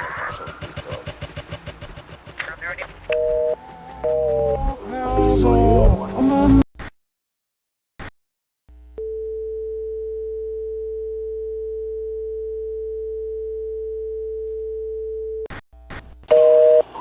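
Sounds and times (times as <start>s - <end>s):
low hum: 0.0s - 6.6s
steady electronic tone: 3.2s - 6.6s.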